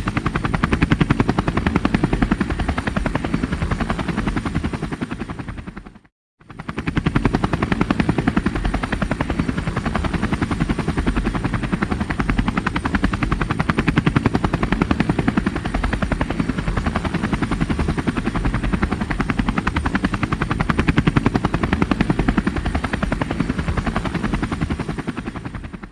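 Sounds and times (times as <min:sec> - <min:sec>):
helicopter rotor blades chopping: 0:00.0 - 0:25.9.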